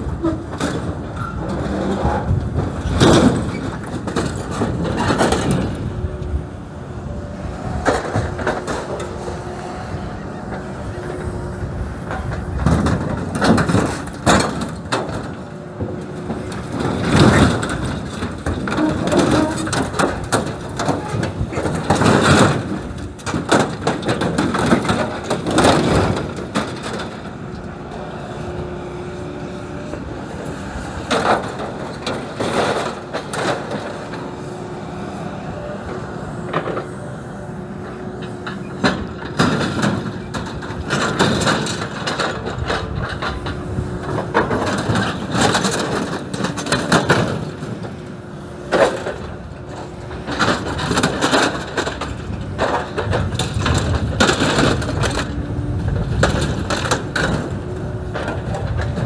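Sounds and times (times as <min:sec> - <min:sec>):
excavator engine running: 0:00.0 - 0:59.0
metal crunching and cracking: 0:12.1 - 0:27.3, 0:38.2 - 0:59.0.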